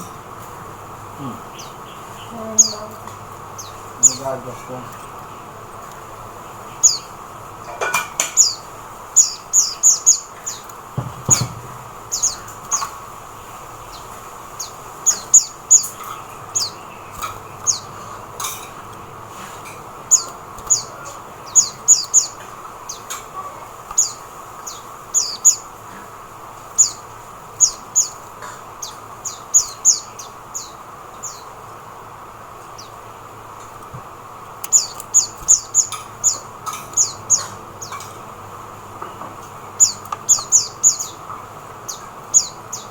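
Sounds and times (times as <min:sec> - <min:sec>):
bird chirping high and thin: 0:08.4 - 0:11.5, 0:13.9 - 0:18.3, 0:20.1 - 0:23.1, 0:24.0 - 0:25.7.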